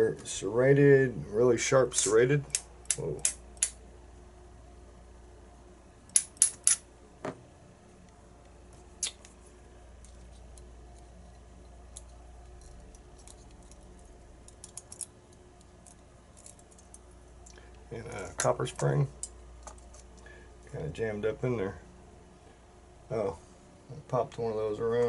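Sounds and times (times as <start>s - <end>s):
small metal clicks: 11.9s - 17.6s.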